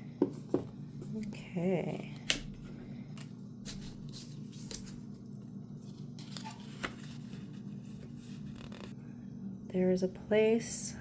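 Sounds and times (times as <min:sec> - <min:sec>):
steady low hum: 0:00.0 - 0:11.0
paper rustling and crinkling: 0:05.8 - 0:08.9.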